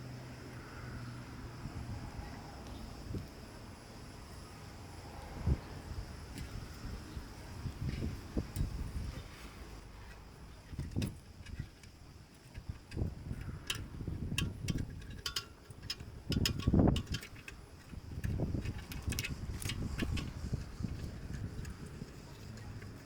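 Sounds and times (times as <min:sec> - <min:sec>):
light metallic clicks: 0:09.8 - 0:23.0.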